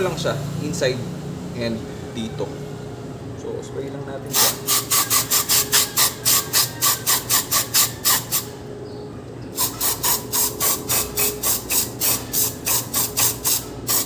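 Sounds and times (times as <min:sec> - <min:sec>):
aerosol spray hissing bursts: 0:04.3 - 0:08.5, 0:09.6 - 0:14.0.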